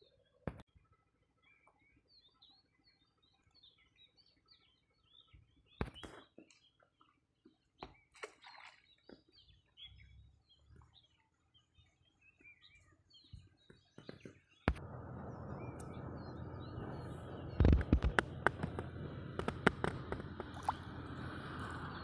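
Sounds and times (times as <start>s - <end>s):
birds chirping and twittering: 0.0s - 22.0s
sharp clicks: 17.5s - 20.8s.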